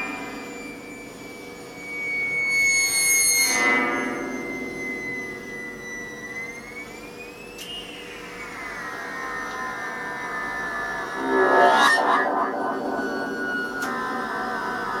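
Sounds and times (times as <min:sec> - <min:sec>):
gliding electronic synth drone: 0:08.2 - 0:15.0
synth note cluster: 0:09.0 - 0:15.0
low steady synth tone: 0:09.4 - 0:15.0.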